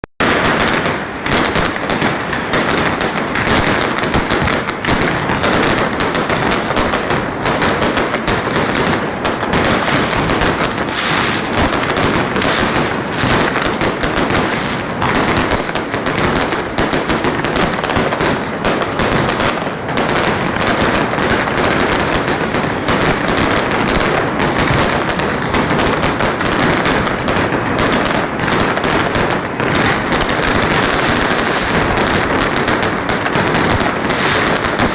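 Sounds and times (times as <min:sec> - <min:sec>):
high falling firework whistles: 0:00.2 - 0:21.0, 0:22.0 - 0:24.1, 0:24.7 - 0:28.2, 0:29.6 - 0:34.9
firecrackers crackling: 0:00.2 - 0:34.9.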